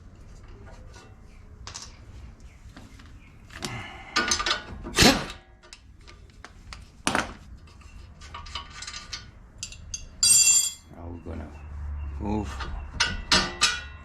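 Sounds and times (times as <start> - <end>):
metal tools clinking on bolts: 4.2 - 4.7, 7.6 - 11.0, 12.6 - 14.0.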